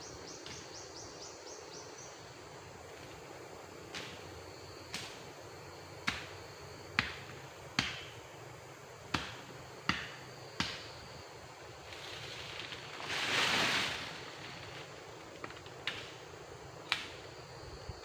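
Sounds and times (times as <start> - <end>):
hissing noise: 11.8 - 15.4.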